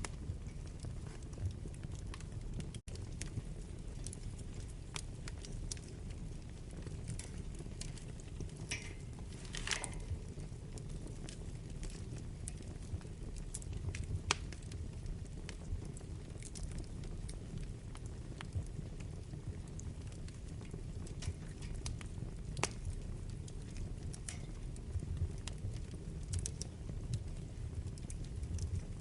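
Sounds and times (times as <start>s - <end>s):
fire flames rumbling: 0.0s - 29.0s
logs crackling and popping: 0.0s - 29.0s
fire hissing: 4.9s - 10.4s.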